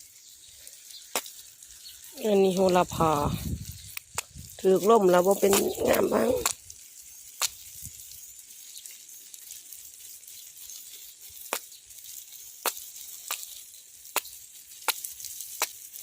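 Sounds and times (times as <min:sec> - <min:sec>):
running water bubbling: 0:00.1 - 0:08.5.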